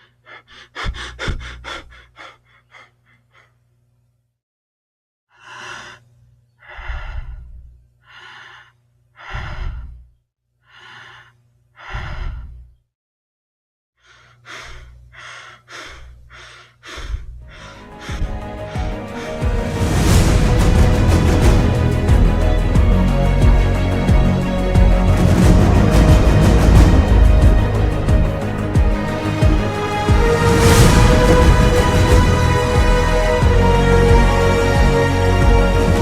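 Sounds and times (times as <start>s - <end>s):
person breathing: 0.0s - 3.6s, 5.3s - 12.7s, 14.0s - 20.0s.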